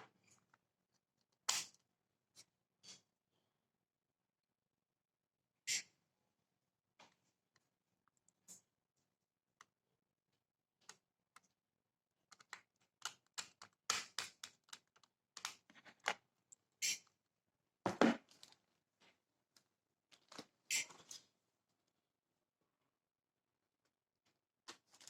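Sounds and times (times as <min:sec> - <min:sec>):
small clicks taps and scrapes: 0:10.8 - 0:11.6, 0:12.2 - 0:16.2.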